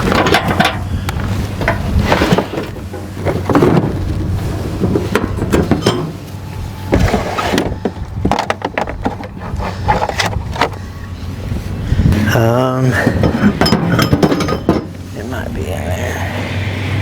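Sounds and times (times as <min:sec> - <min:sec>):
metal tools clinking: 0:05.5 - 0:06.2, 0:13.0 - 0:15.0.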